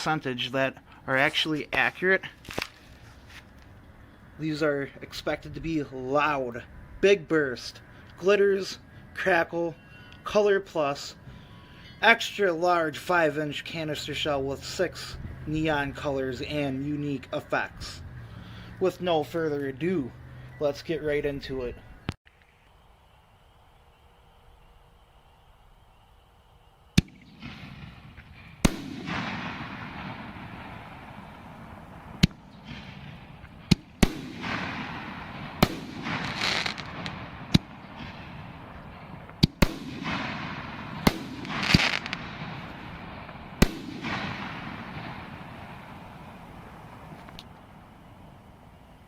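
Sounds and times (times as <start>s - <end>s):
firework shells launching: 27.0s - 38.7s, 39.3s - 47.4s
loud shell bursts: 27.0s - 46.9s
firework crackling and sizzling: 27.1s - 48.2s.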